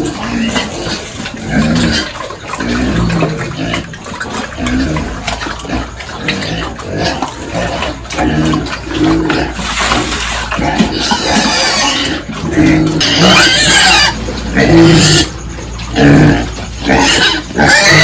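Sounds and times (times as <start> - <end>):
pigs feeding noisily: 0.0 - 18.0
pigs grunting: 0.0 - 18.0.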